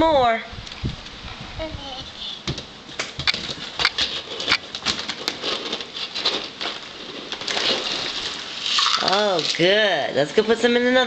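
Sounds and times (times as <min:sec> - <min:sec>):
dry kibble rattling: 0:03.6 - 0:09.9.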